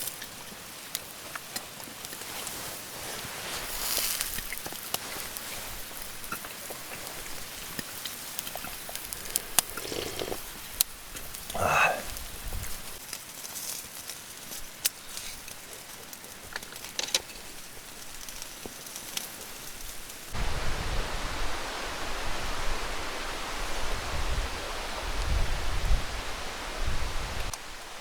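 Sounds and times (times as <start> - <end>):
fire crackling: 0.0 - 28.0
soft hiss: 18.0 - 28.0.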